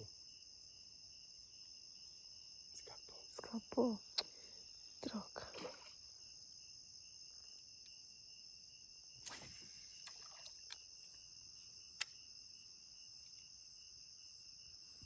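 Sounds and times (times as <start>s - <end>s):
crickets trilling: 0.0s - 15.0s
insect pulsing chirr: 0.0s - 15.0s
sharp click: 12.0s - 12.2s.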